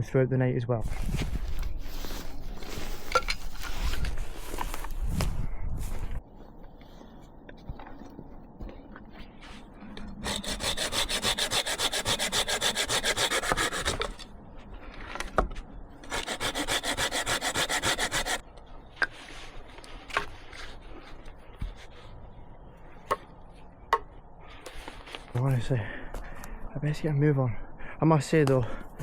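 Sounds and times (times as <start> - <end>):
hand saw cutting wood: 10.2 - 14.2, 16.0 - 18.4.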